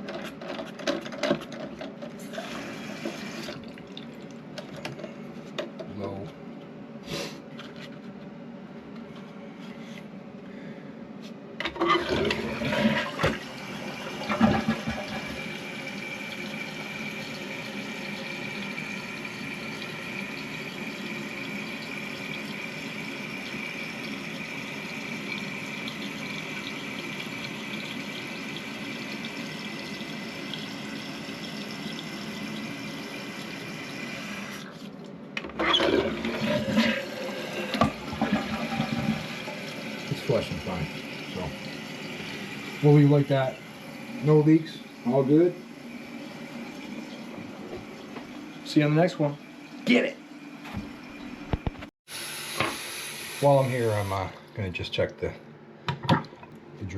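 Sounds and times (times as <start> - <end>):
toilet tank refilling hiss: 2.2 - 3.6, 12.0 - 34.7, 35.6 - 49.4, 52.1 - 54.4
toilet flushing: 2.2 - 4.3, 11.6 - 34.9, 35.6 - 54.8.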